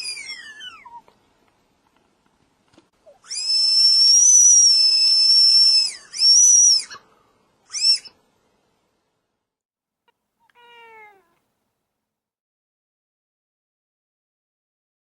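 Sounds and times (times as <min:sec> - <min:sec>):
candy whistle blowing: 0:03.3 - 0:07.0, 0:07.7 - 0:08.2.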